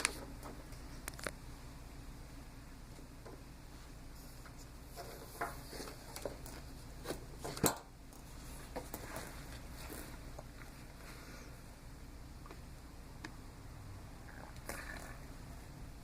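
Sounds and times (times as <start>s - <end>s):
blower low hum: 0.0s - 16.0s.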